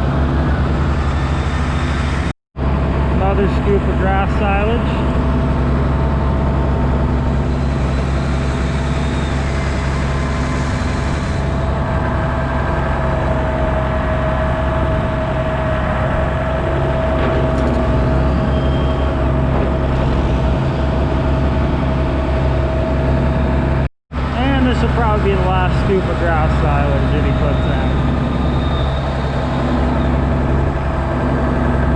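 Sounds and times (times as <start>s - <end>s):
diesel tractor engine running: 0.0s - 31.9s
steady whine: 0.0s - 31.9s.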